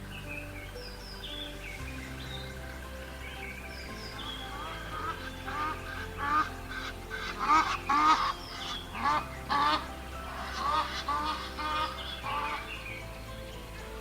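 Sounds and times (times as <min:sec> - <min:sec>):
quiet background music: 0:00.0 - 0:14.0.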